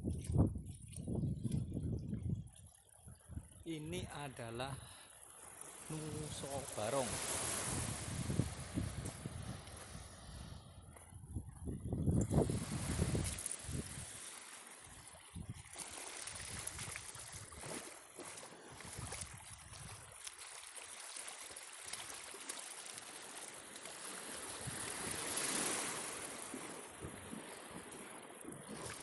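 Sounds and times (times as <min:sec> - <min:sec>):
wind rumbling on microphone: 0:00.0 - 0:04.2, 0:05.9 - 0:14.2, 0:14.9 - 0:17.8, 0:18.8 - 0:20.1, 0:24.5 - 0:25.6, 0:27.0 - 0:29.0
sea waves washing: 0:04.2 - 0:11.0, 0:12.3 - 0:29.0.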